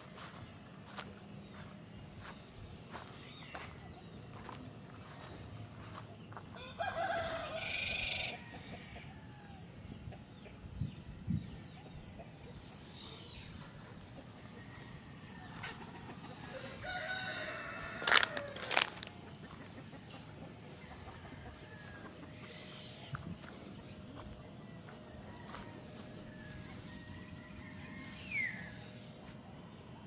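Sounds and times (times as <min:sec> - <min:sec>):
rooster crowing: 0:06.5 - 0:09.7, 0:14.6 - 0:19.6, 0:20.8 - 0:22.3, 0:25.0 - 0:28.8.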